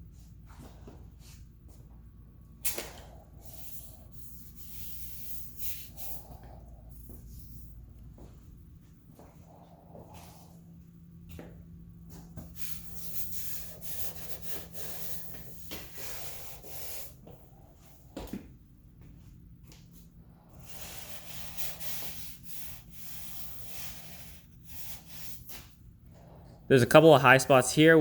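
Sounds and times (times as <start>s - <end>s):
rubbing and scuffing strokes: 0.1s - 1.9s.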